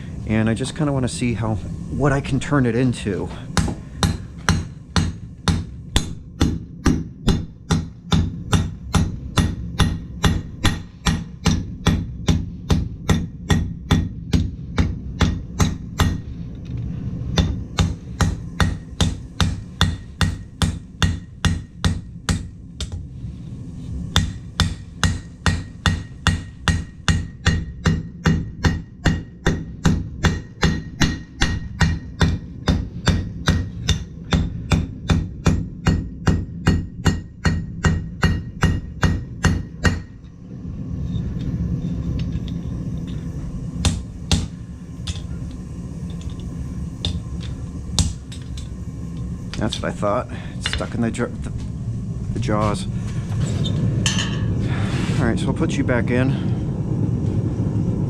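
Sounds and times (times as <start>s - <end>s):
low hum: 0.0s - 58.0s
hammer striking steel on anvil: 3.2s - 16.3s, 17.3s - 23.0s, 24.1s - 40.2s, 43.8s - 45.4s, 46.1s - 48.8s, 54.0s - 54.6s.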